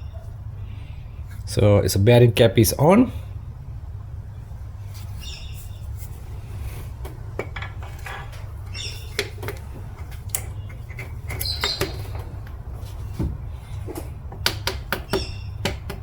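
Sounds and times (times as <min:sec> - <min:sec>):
steady low hum: 0:00.0 - 0:16.0
tools scraping: 0:07.4 - 0:13.0.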